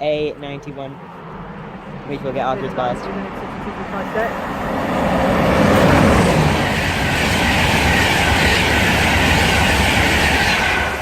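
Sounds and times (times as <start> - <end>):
train passing at speed: 0.0 - 11.0.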